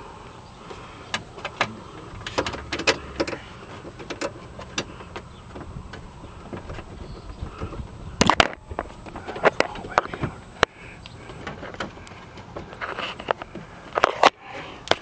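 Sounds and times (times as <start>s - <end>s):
hand tools clicking and knocking: 1.1s - 6.9s.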